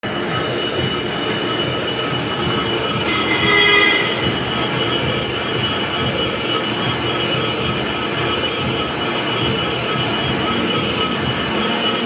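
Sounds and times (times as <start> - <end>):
high metallic squealing: 0.1 - 12.0.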